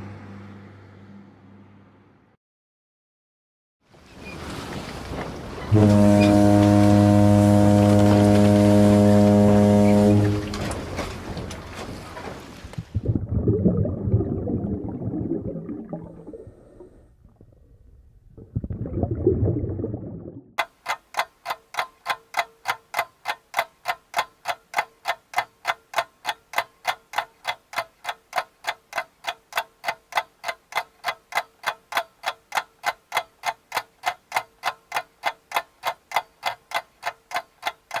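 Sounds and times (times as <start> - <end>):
fast even ticking: 20.6 - 38.0.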